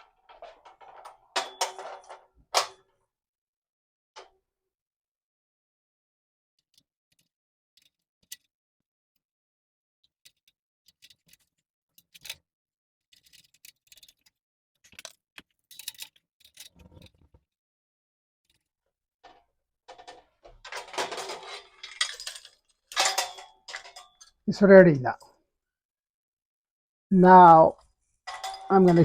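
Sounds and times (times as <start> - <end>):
metallic clicks and clinks: 0.2 - 2.8, 13.1 - 17.2, 18.5 - 24.4, 28.3 - 29.0.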